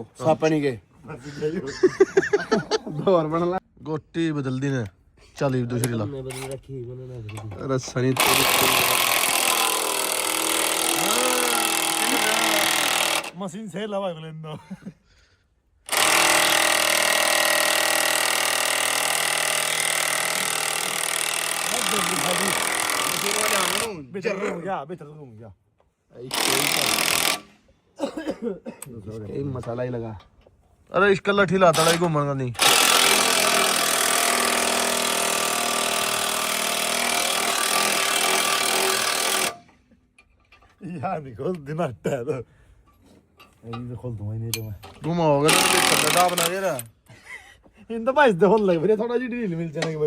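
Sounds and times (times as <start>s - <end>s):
power tool rattling: 7.3s - 13.4s, 15.9s - 24.0s, 26.3s - 27.6s, 31.7s - 40.8s, 44.7s - 47.0s.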